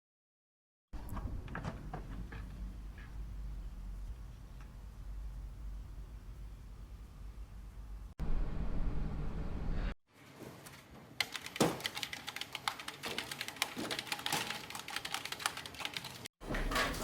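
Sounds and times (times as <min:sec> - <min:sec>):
computer keyboard typing: 0:11.2 - 0:16.3.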